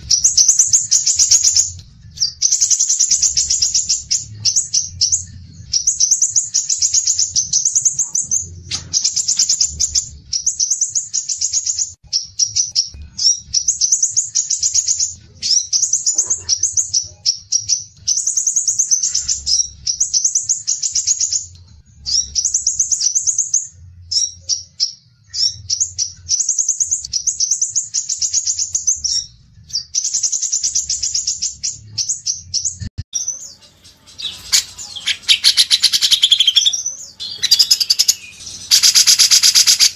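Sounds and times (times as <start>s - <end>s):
songbird chattering: 29.8s - 39.9s.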